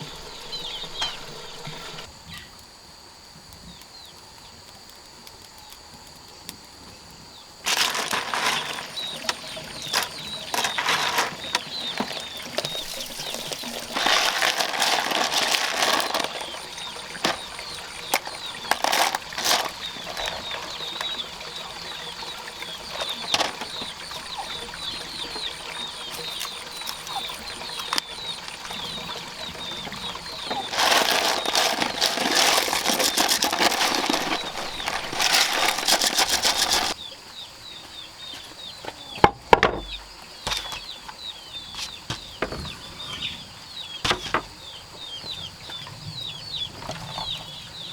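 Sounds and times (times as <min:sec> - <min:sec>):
small birds chirping: 0:00.0 - 0:02.6, 0:06.9 - 0:47.9
loud rustling noise: 0:07.6 - 0:21.2, 0:22.8 - 0:37.0.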